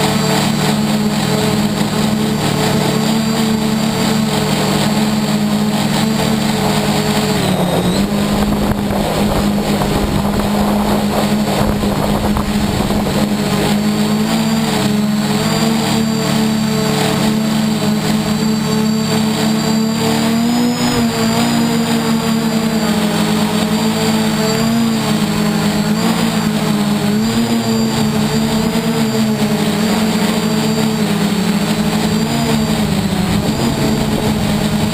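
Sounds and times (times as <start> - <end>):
faint high motor whine: 0.0 - 34.9
multirotor propellers buzzing: 0.0 - 34.9.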